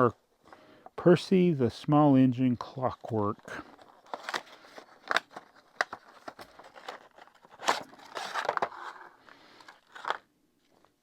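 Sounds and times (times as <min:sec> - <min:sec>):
packaging rustling and crinkling: 0:03.3 - 0:11.0.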